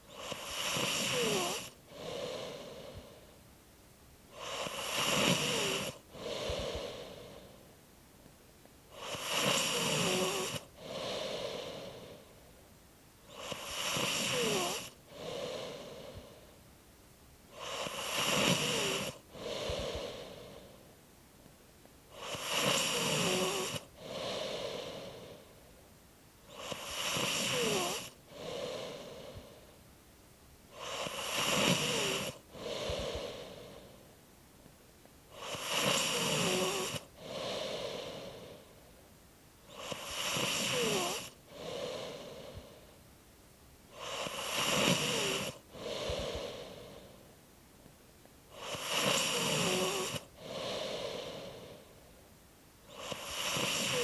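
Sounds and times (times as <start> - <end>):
snoring with squeaky whistle: 0.1 - 2.4, 4.4 - 6.0, 8.9 - 10.7, 13.3 - 15.8, 17.5 - 20.1, 22.1 - 25.0, 26.5 - 29.1, 30.7 - 33.4, 35.3 - 38.2, 39.7 - 42.2, 43.9 - 46.6, 48.5 - 51.3, 52.9 - 54.0.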